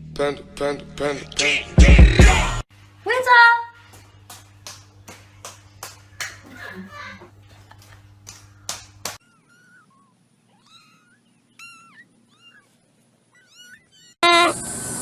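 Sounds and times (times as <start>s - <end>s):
cat meowing: 9.2s - 14.2s.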